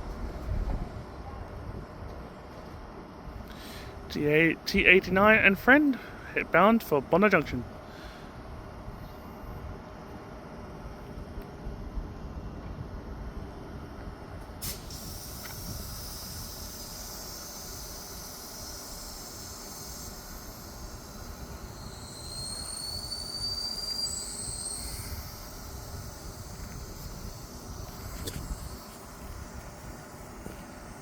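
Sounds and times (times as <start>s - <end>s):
electric train rumbling: 0.0s - 31.0s
high wheel squeals: 19.6s - 30.8s.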